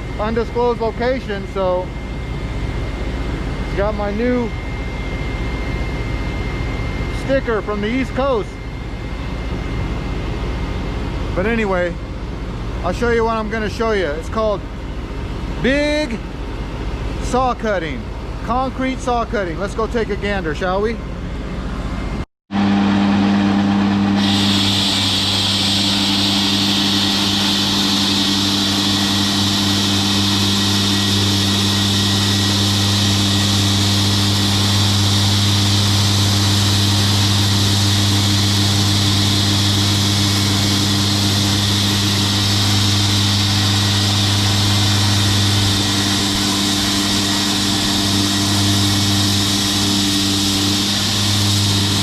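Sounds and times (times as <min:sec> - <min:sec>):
large engine running: 0:00.0 - 0:52.0
high hiss: 0:24.2 - 0:34.0.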